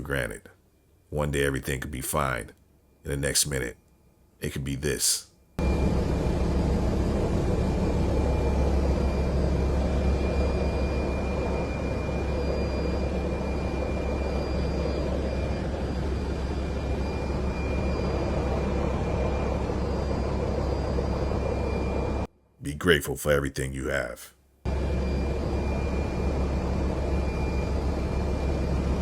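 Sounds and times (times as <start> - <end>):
faint high whine: 0.0 - 23.0, 23.9 - 29.0
aircraft engine rumble: 5.6 - 22.3, 24.7 - 29.0.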